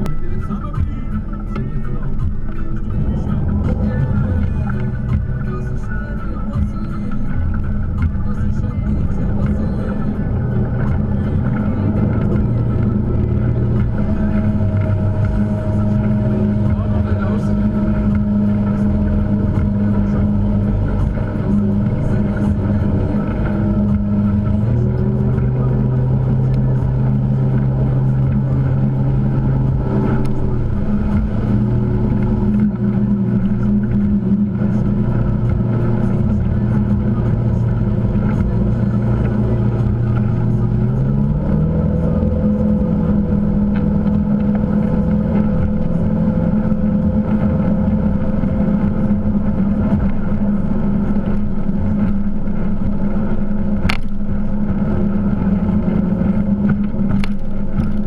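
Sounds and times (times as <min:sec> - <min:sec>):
motorboat engine running: 0:00.0 - 0:58.0
rushing water noise: 0:00.0 - 0:58.0.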